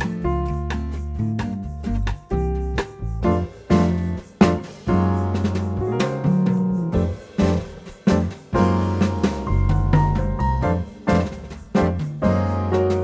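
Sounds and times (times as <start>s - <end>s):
relaxed jazz music: 0.0s - 13.0s.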